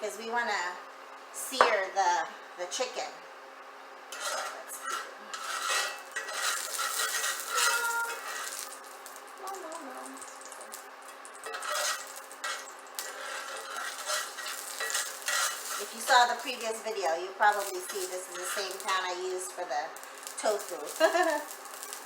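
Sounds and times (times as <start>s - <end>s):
metal utensils clinking on a pan: 4.2s - 8.8s, 10.1s - 16.7s, 17.5s - 19.1s.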